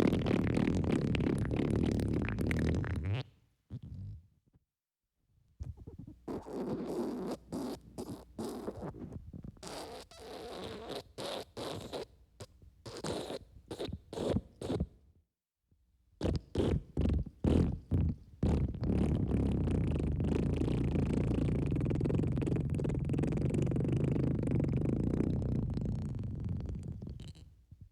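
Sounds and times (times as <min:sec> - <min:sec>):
wet farting noises: 0:00.0 - 0:03.9, 0:16.2 - 0:27.4.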